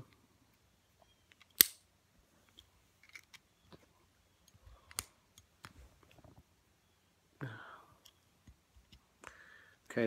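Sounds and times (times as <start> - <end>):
sharp click of gun parts: 1.3 - 1.9.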